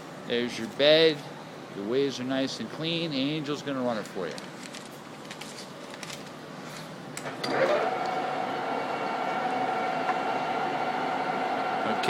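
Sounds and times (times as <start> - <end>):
lathe spindle whining: 7.4 - 12.0.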